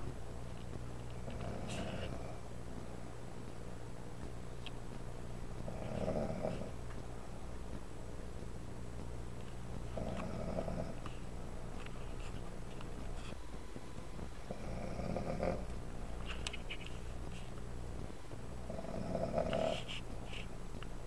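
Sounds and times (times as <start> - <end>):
steady low hum: 0.0 - 21.0
person snoring: 5.7 - 6.7, 10.0 - 11.0, 14.5 - 15.7, 18.7 - 19.9.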